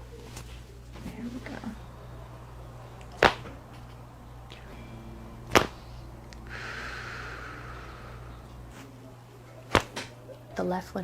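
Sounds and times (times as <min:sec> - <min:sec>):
breathy rush of air: 0:01.6 - 0:10.2
sharp loud crack: 0:03.2 - 0:03.6.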